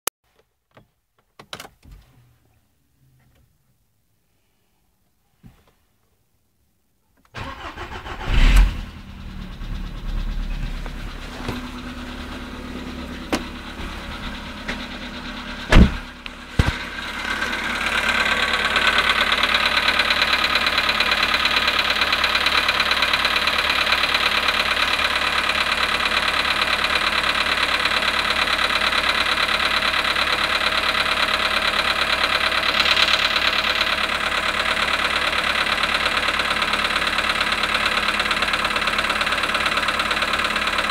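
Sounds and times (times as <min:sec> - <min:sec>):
car engine starting and idling: 0:07.2 - 0:40.9
engine knock: 0:09.0 - 0:40.9
loud thumps and clicks: 0:15.7 - 0:16.9.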